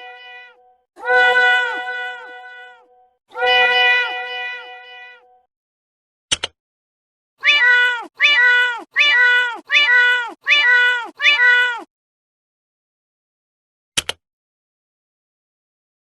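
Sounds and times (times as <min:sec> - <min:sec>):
cat meow ringtone: 0:00.0 - 0:05.4, 0:07.4 - 0:11.9.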